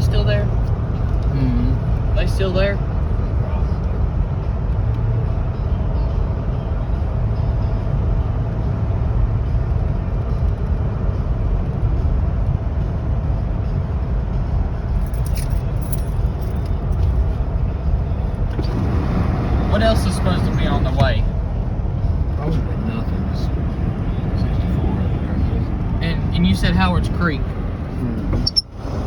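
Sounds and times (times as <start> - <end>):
road noise: 0.0 - 29.0
vehicle engine rumble: 0.0 - 29.0.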